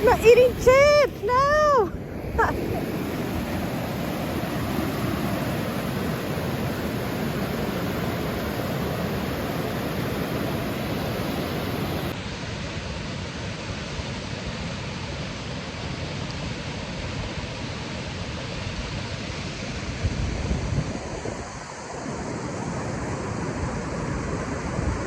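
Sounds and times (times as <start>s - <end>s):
wind buffeting microphone: 0.0s - 12.1s.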